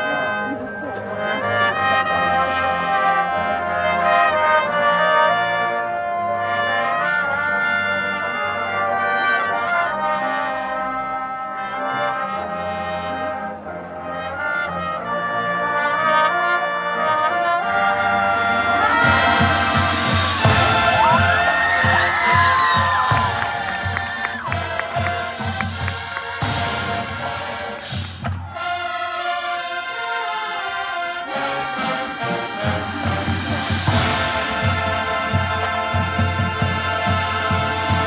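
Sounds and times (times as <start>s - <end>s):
brass band playing held chords: 0.0s - 38.0s
crowd cheering: 17.7s - 38.0s.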